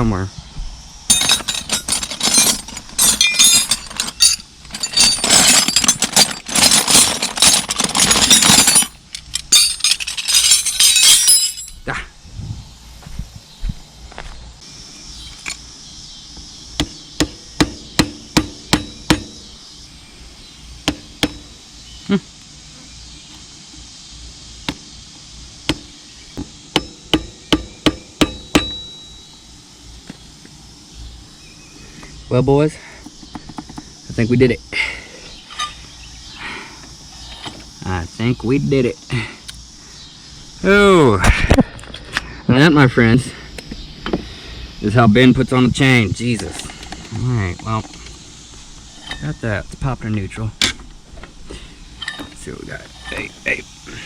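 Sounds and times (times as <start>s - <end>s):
metal hand tools clattering: 1.1s - 11.8s.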